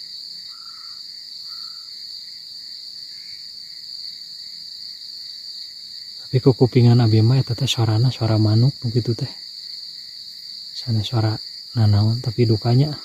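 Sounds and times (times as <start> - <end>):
crickets chirring: 0.0 - 13.0.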